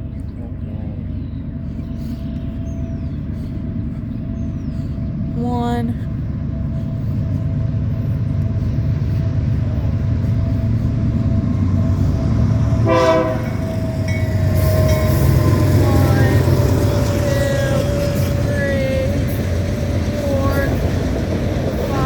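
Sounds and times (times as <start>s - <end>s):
freight train rumbling on rails: 0.0s - 22.0s
locomotive air horn honk: 12.8s - 17.2s.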